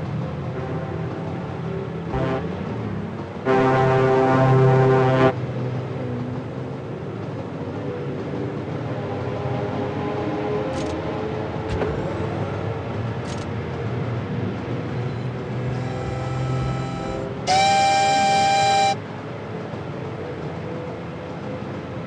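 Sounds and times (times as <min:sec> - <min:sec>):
train rumbling: 0:00.0 - 0:22.0
train horn: 0:02.1 - 0:02.6, 0:03.4 - 0:05.4, 0:15.5 - 0:19.0
train sharp clicks: 0:10.6 - 0:12.3, 0:14.6 - 0:19.0.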